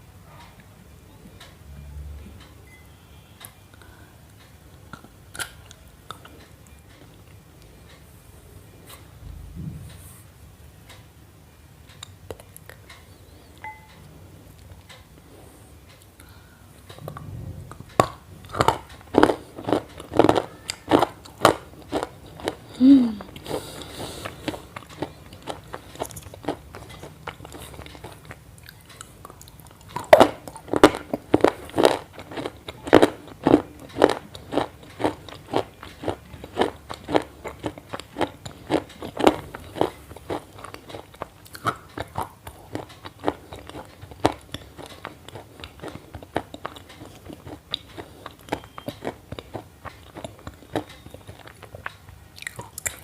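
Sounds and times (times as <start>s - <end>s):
crunchy chewing: 17.8s - 53.0s.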